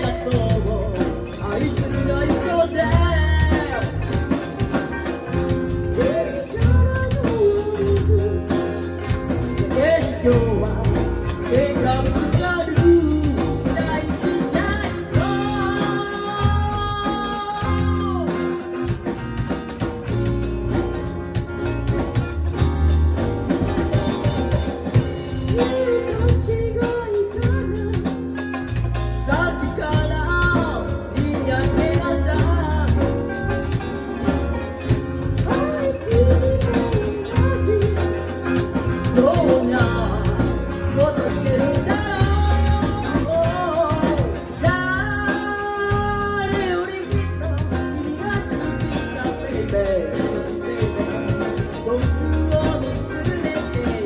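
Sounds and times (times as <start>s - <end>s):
person singing: 0.0s - 22.7s, 23.7s - 54.0s
guitar: 0.0s - 54.0s
steady drum beat: 0.0s - 54.0s.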